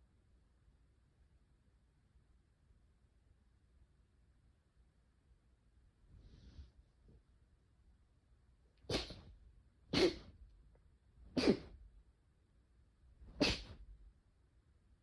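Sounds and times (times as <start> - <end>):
person sneezing: 8.9 - 9.3, 9.9 - 10.3, 11.3 - 11.8, 13.3 - 13.8.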